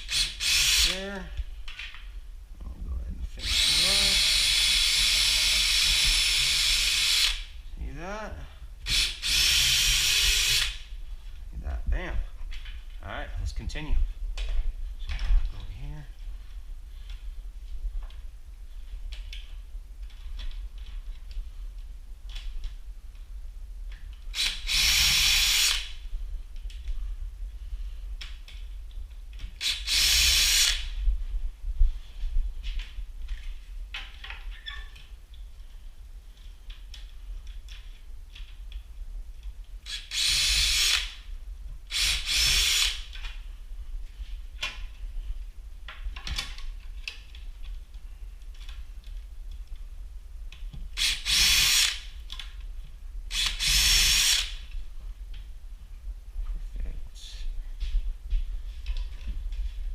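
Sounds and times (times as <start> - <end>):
cordless drill running: 0.0 - 1.0, 3.4 - 7.5, 8.8 - 10.8, 24.4 - 25.9, 29.6 - 30.9, 39.9 - 41.2, 41.9 - 43.1, 51.0 - 52.1, 53.3 - 54.6.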